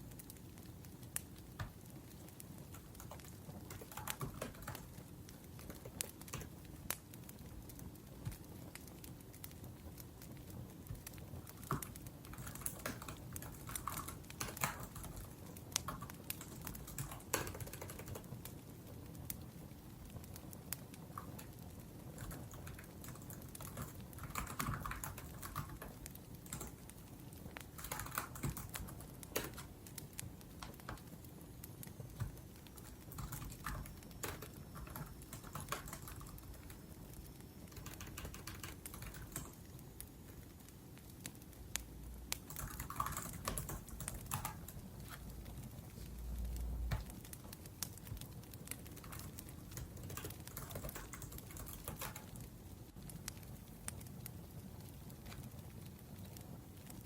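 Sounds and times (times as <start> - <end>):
laptop keyboard typing: 2.6 - 7.0, 10.9 - 18.6, 21.1 - 27.0, 27.6 - 31.2, 32.1 - 36.8, 37.6 - 39.7, 42.3 - 45.6, 46.6 - 52.5.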